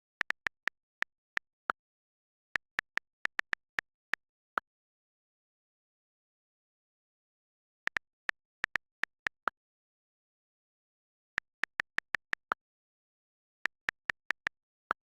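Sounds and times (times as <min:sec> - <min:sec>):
phone keyboard taps: 0:02.6 - 0:04.1, 0:11.4 - 0:12.5.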